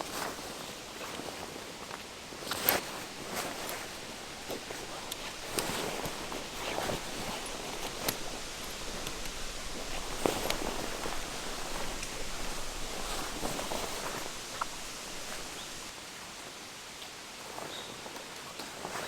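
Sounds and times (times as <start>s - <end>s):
rustling: 0.0s - 15.9s
steady outdoor hiss: 0.0s - 17.7s
light clicks and taps: 2.4s - 15.9s.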